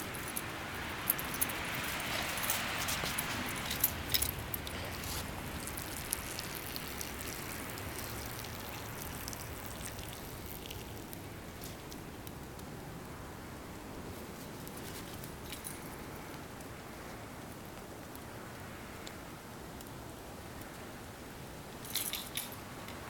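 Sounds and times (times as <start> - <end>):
metal dog tags jingling: 0.0 - 8.1, 21.8 - 23.0.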